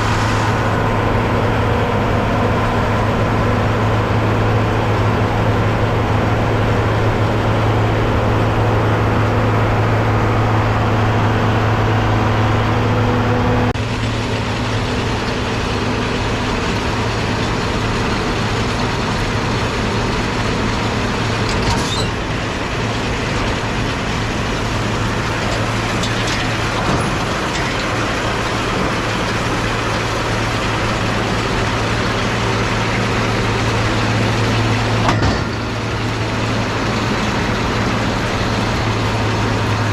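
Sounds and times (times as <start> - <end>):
baler mechanical noise: 0.0 - 39.9
tractor diesel engine running: 0.0 - 39.9.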